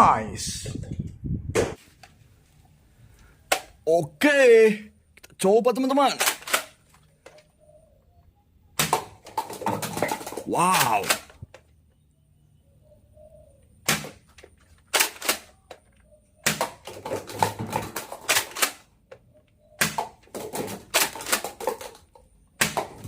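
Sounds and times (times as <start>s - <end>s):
plastic toy gun clicking: 6.1s - 7.4s.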